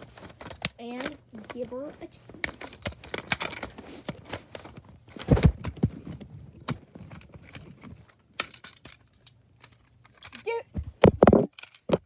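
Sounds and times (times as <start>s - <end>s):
plastic clicks and knocks: 0.0s - 9.0s.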